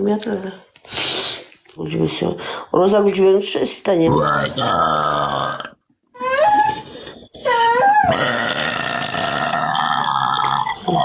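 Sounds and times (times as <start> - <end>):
person burping: 4.1 - 5.8, 8.1 - 11.0.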